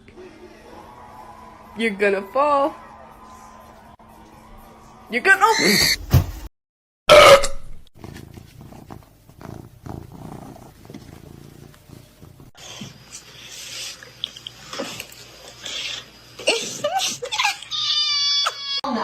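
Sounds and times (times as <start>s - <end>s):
cat purring: 8.0s - 12.6s.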